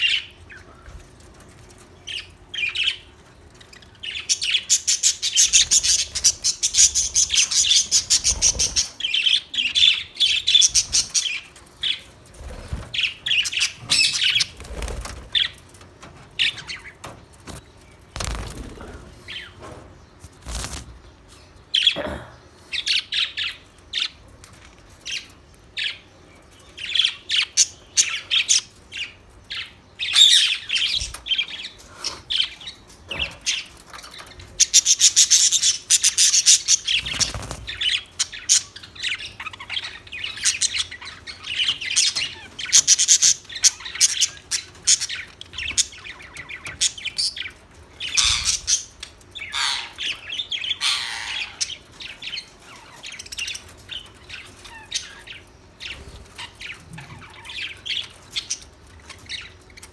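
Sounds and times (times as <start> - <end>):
budgerigars chirping and chattering: 0.0 - 22.0, 22.7 - 59.9.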